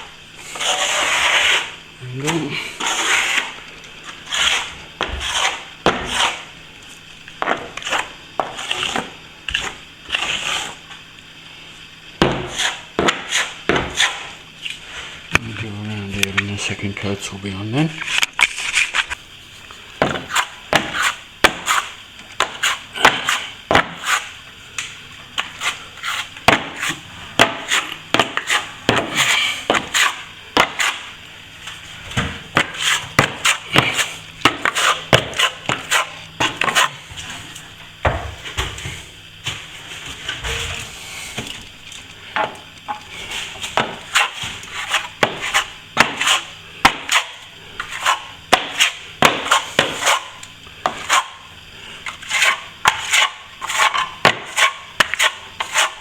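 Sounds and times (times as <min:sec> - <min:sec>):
plastering tools clacking and scraping: 0:20.0 - 0:51.4, 0:52.0 - 0:56.0.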